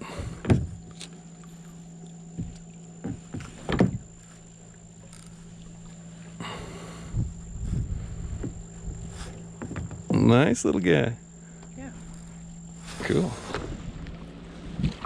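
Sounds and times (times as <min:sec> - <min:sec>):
low hum: 0:00.0 - 0:15.0
dull knocks: 0:00.4 - 0:00.8, 0:02.3 - 0:04.2, 0:08.2 - 0:09.0, 0:09.6 - 0:10.3.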